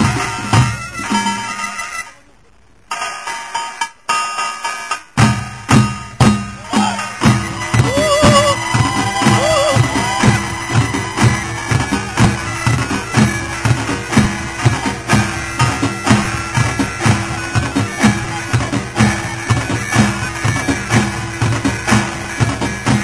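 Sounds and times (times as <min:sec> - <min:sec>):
barrel drums beating: 0:00.0 - 0:02.0, 0:05.1 - 0:23.0
reedy wind instrument: 0:06.4 - 0:23.0.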